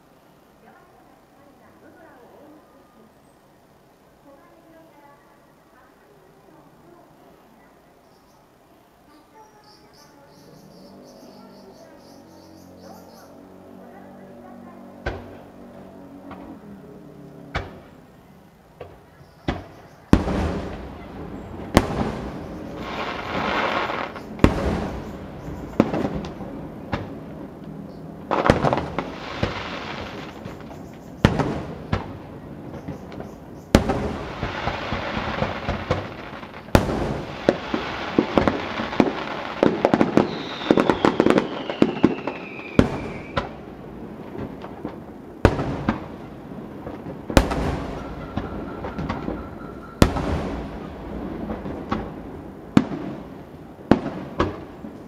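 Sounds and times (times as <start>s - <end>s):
fireworks crackling: 0.0s - 55.0s
firework shells booming: 15.0s - 16.6s, 17.5s - 55.0s
falling firework whistle: 36.6s - 43.5s, 47.4s - 50.8s.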